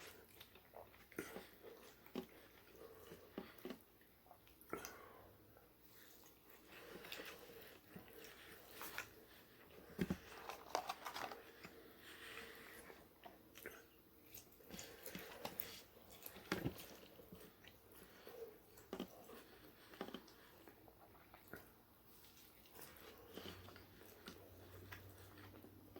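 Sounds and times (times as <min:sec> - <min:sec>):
person chewing and biting food: 0:00.0 - 0:05.0, 0:05.9 - 0:25.9.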